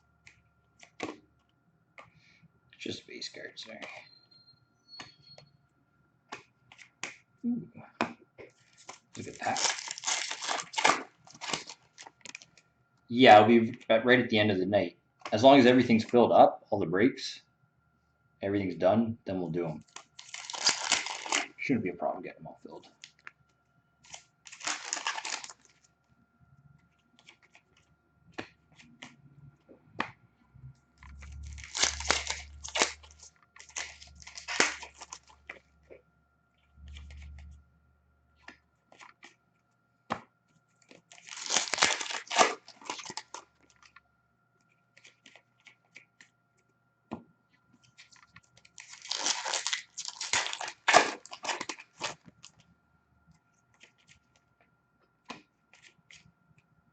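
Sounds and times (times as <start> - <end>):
foil wrappers ripping and crinkling: 8.8 - 12.5, 19.9 - 21.6, 24.0 - 25.8, 31.0 - 35.6, 41.1 - 43.9, 48.0 - 52.6
clicks and rustles of handling: 47.5 - 56.7.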